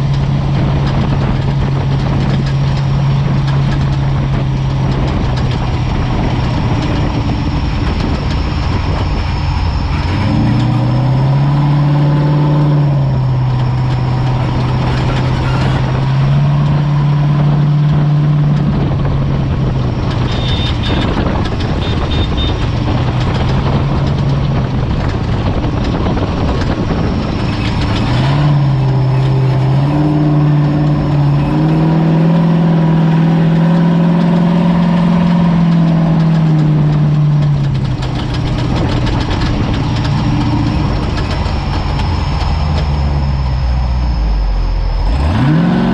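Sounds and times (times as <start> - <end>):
driving noise: 0.0 - 45.9
off-road vehicle engine running: 0.0 - 45.9
high beeps: 20.2 - 21.2, 39.9 - 45.9.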